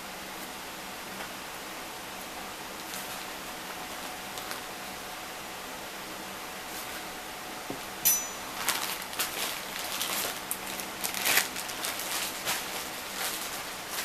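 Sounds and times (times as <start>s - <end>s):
sharp clink of dish: 8.0s - 8.5s.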